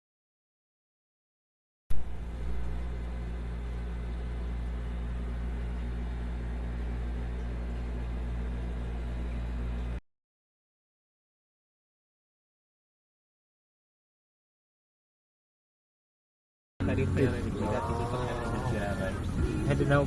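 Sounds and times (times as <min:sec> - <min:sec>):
pulsing mechanical hum: 0:01.9 - 0:10.0, 0:16.8 - 0:20.0.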